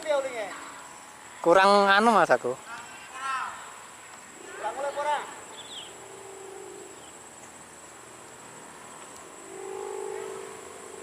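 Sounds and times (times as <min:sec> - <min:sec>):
crickets chirping: 0:00.0 - 0:11.0
kite hummer droning: 0:04.2 - 0:11.0.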